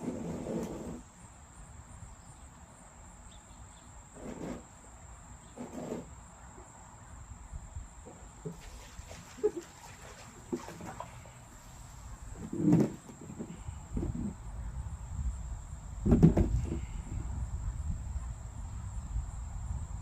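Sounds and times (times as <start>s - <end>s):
insects trilling: 0.1s - 16.0s.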